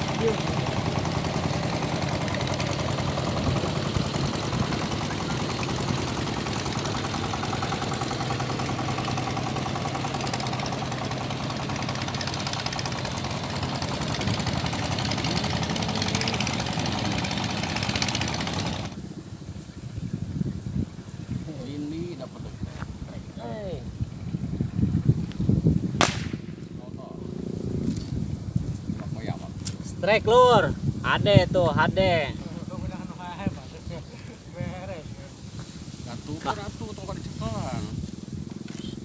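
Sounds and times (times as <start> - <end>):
boat engine chugging: 0.0 - 20.0.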